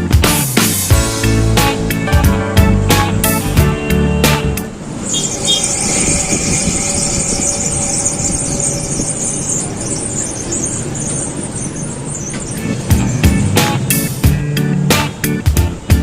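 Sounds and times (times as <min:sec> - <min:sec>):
high-pitched bearing squeal: 0:05.0 - 0:13.3.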